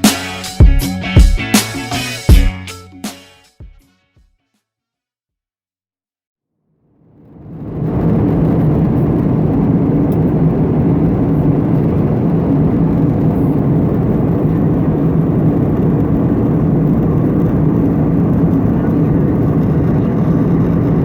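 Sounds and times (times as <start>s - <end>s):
airplane cabin engine drone: 7.2s - 21.0s.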